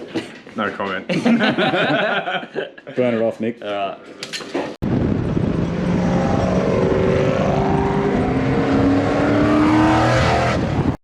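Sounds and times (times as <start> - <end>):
car engine revving high: 5.3 - 11.0.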